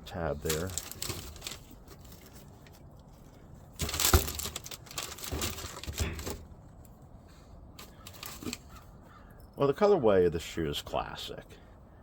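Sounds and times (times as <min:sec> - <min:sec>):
packaging crinkling and rustling: 0:00.1 - 0:07.0, 0:07.8 - 0:08.8.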